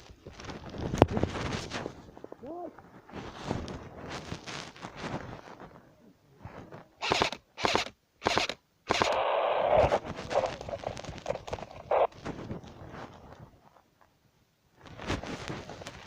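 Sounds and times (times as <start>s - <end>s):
airsoft gunfire bursts: 7.0s - 9.9s.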